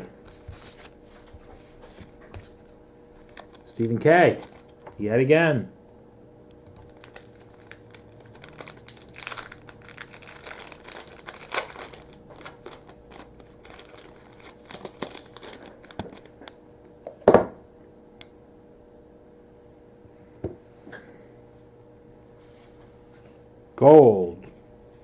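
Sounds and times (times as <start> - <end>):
cards being handled: 0.3 - 5.0
card pack wrapper crinkling: 3.2 - 5.0, 6.6 - 16.5.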